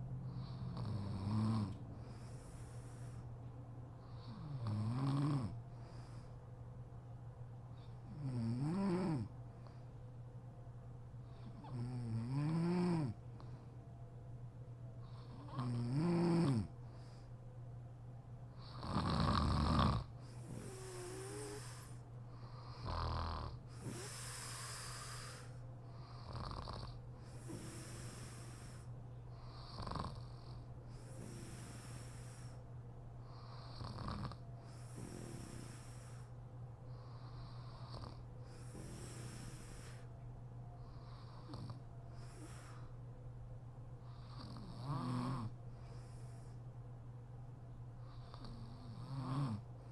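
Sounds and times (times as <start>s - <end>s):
woman snoring: 0.3s - 2.8s, 4.2s - 5.6s, 8.1s - 9.3s, 11.6s - 13.2s, 15.2s - 16.7s, 18.6s - 22.0s, 22.8s - 25.5s, 26.2s - 28.9s, 29.6s - 30.5s, 33.6s - 36.2s, 37.8s - 40.0s, 41.2s - 41.8s, 44.2s - 45.6s, 48.3s - 49.6s.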